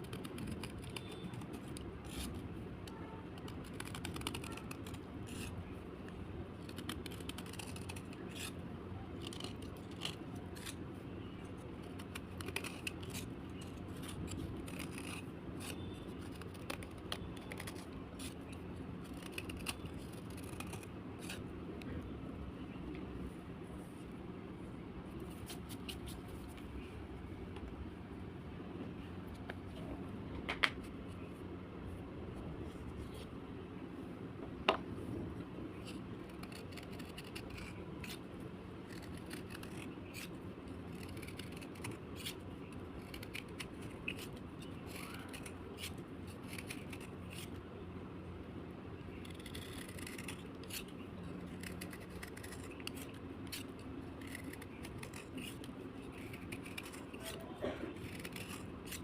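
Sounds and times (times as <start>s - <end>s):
blade scraping slate: 0.0s - 2.4s, 3.6s - 5.6s, 6.6s - 8.6s, 9.2s - 10.8s, 11.8s - 21.5s, 38.9s - 47.6s, 49.1s - 59.0s
steady low hum: 0.0s - 59.0s.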